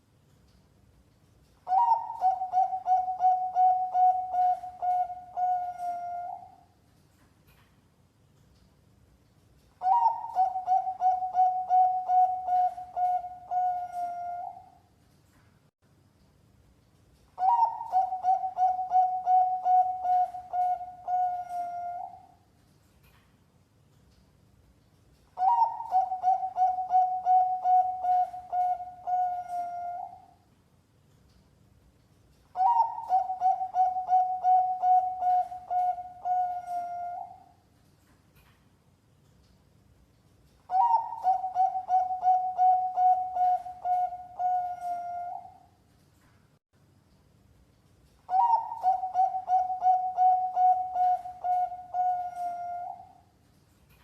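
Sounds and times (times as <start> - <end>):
dove cooing: 1.7 - 6.6, 9.8 - 14.8, 17.4 - 22.4, 25.4 - 30.3, 32.6 - 37.5, 40.7 - 45.6, 48.3 - 53.1.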